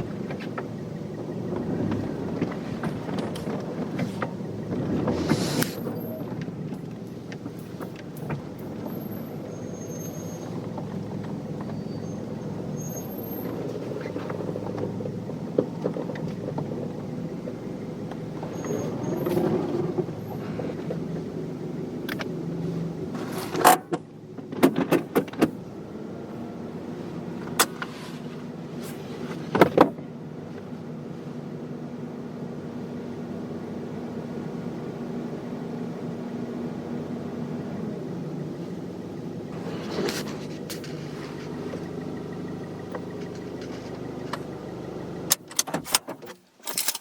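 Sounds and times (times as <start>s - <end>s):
sharp clicks and knocks from car: 0.0s - 9.0s, 13.5s - 17.0s, 22.0s - 22.4s, 23.2s - 25.6s, 27.4s - 28.0s, 29.2s - 30.0s, 39.6s - 44.6s, 45.2s - 47.0s
car engine running: 0.0s - 47.0s.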